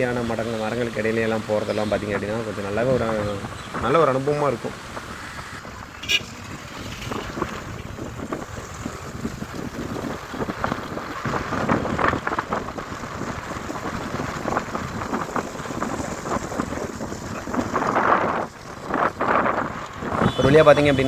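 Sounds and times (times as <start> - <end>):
motorcycle running noise: 0.0 - 21.0
wind buffeting microphone: 0.0 - 21.0.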